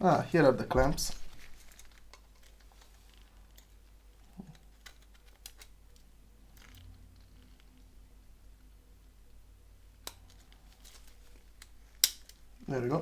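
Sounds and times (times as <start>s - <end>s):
plastic parts clicking: 4.4s - 6.8s.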